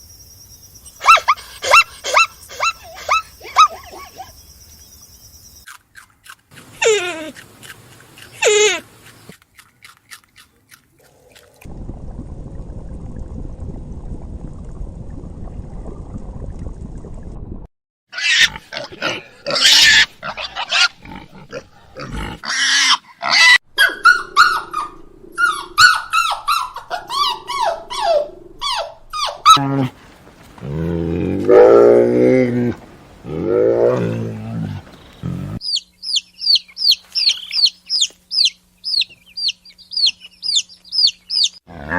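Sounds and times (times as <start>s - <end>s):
falling animal cries: 22.5s - 35.6s
low animal grunting: 29.6s - 35.6s.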